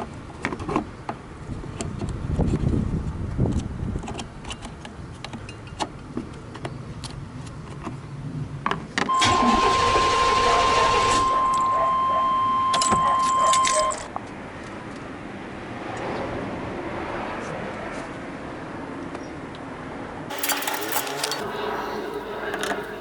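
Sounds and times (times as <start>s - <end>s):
starter cranking engine: 20.3s - 23.0s
steady high-pitched tone: 20.3s - 23.0s.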